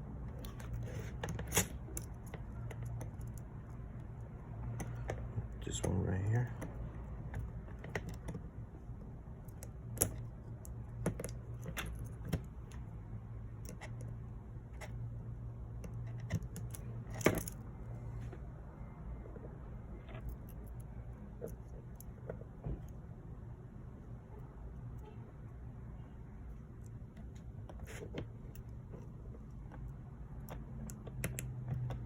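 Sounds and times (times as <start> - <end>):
small clicks and taps: 0.3 - 12.9, 26.8 - 32.0.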